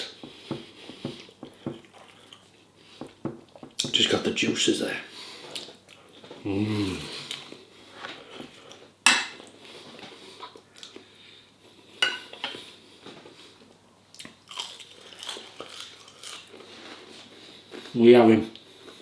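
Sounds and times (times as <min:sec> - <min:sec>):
chewing: 0:14.1 - 0:17.0.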